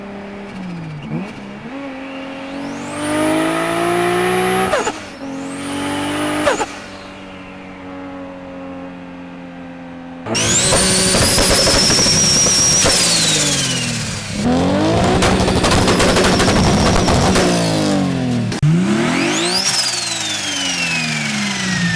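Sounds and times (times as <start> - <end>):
car engine revving: 0.0 - 9.5, 10.2 - 21.9
turbo whistle: 10.4 - 13.2.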